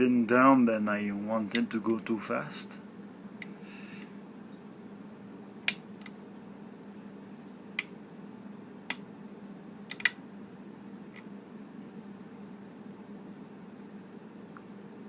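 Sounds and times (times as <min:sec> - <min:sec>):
low steady hum: 0:00.0 - 0:15.0
lock pick clicking on pins: 0:09.9 - 0:10.2.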